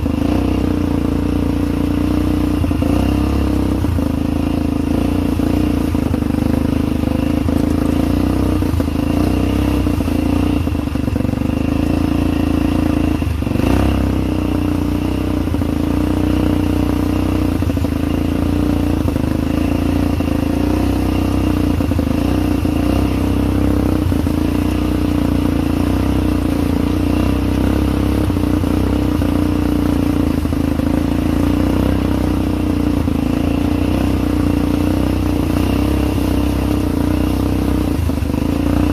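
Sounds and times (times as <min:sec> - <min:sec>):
atv engine running: 0:00.0 - 0:38.9.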